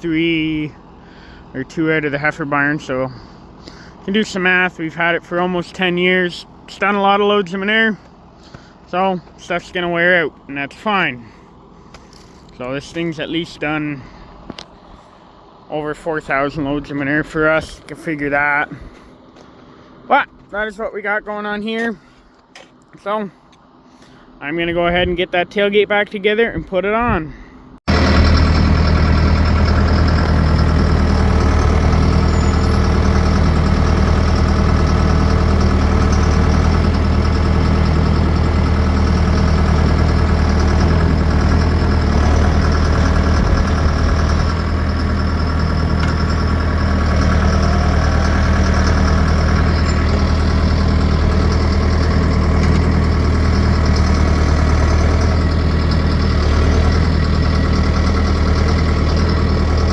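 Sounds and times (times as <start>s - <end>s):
vehicle engine running: 0.0s - 26.2s, 27.1s - 59.9s.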